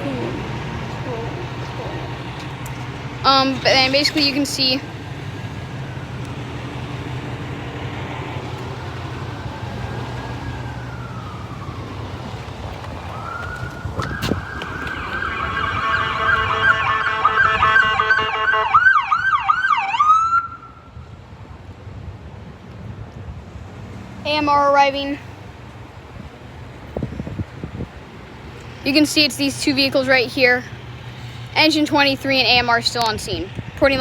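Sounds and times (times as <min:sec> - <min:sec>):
ambulance siren: 0:00.0 - 0:21.2
air horn blasts: 0:15.2 - 0:18.9.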